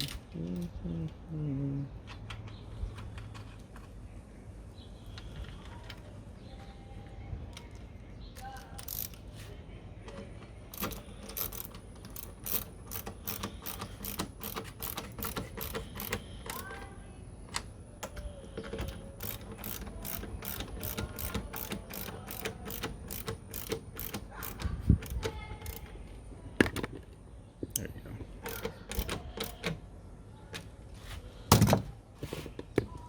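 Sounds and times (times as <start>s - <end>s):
ratchet wrench clicking: 8.8s - 9.2s, 10.7s - 16.8s, 18.8s - 25.9s, 28.4s - 29.8s.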